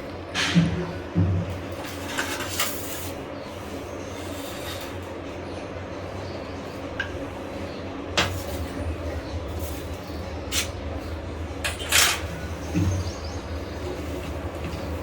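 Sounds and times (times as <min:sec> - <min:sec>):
steady low rumble: 0:07.9 - 0:15.0.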